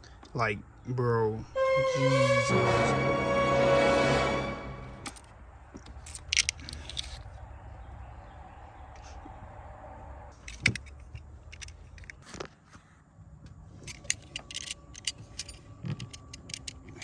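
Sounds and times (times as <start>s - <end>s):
background music: 1.6s - 5.2s
metallic clicks and rattles: 5.9s - 7.3s, 10.4s - 12.3s, 13.8s - 17.0s.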